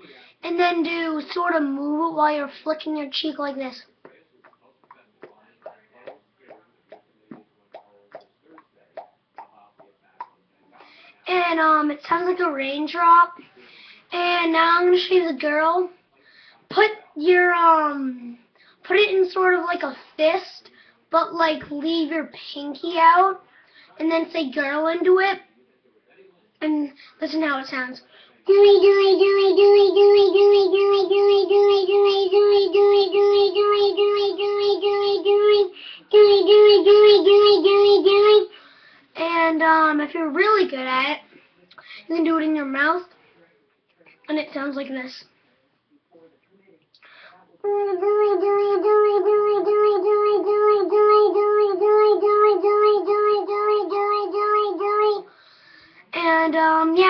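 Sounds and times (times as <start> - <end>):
child chanting through cupped fist: 28.5 - 38.5, 47.7 - 55.3.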